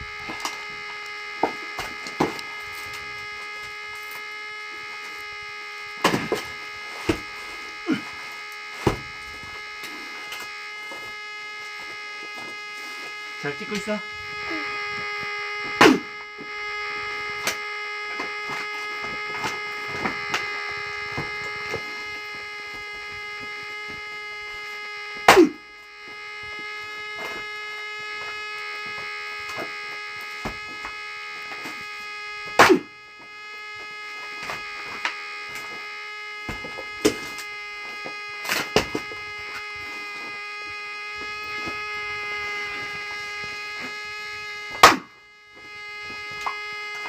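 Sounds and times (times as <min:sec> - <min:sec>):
steady buzzing hum: 0:00.0 - 0:47.0
axe striking firewood: 0:32.6 - 0:32.9, 0:44.8 - 0:45.1.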